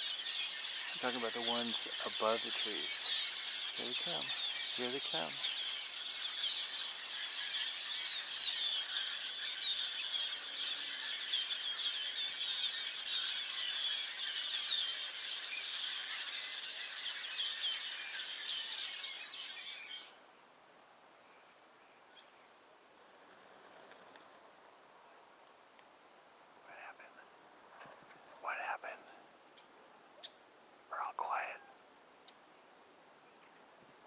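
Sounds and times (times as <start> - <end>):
flock of birds chattering: 0.0 - 20.2, 23.0 - 24.7, 26.6 - 27.3, 27.9 - 32.4.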